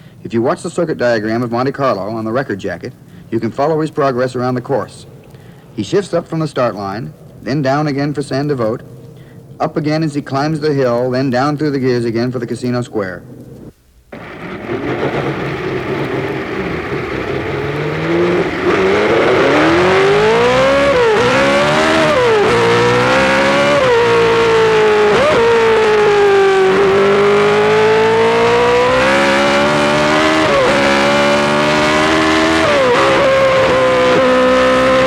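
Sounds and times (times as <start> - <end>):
whine of cams and gears: 13.3 - 35.0
racing car engine accelerating: 14.2 - 35.0.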